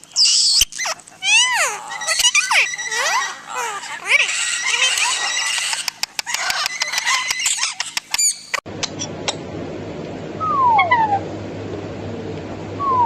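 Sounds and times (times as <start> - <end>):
pet bird chirps and clicks: 4.6 - 9.0.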